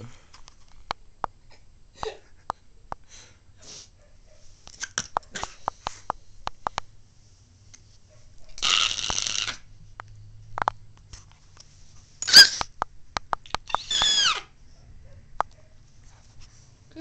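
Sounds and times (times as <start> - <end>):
breathy squeaks: 8.6 - 9.7, 12.2 - 12.7, 13.6 - 14.5.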